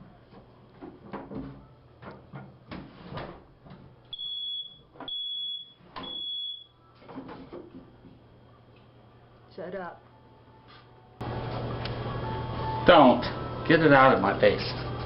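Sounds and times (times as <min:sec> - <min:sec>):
smoke alarm beeping: 0:04.1 - 0:07.0.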